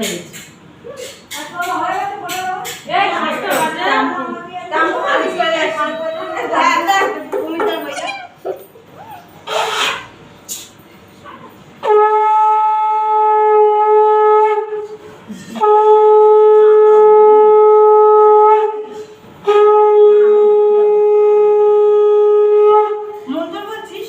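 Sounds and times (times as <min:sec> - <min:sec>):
conch shell blasts: 0:11.8 - 0:14.9, 0:15.6 - 0:23.1.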